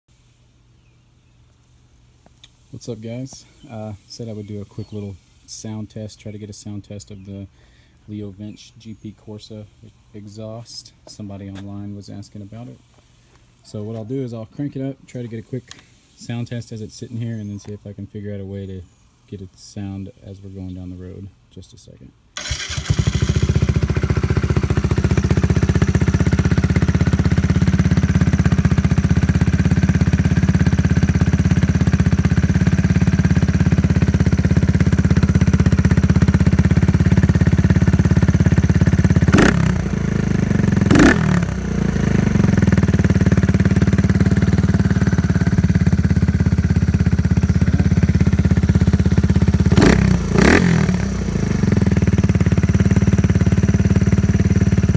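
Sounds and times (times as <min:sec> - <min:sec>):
motorcycle engine idling: 0:22.4 - 0:54.9.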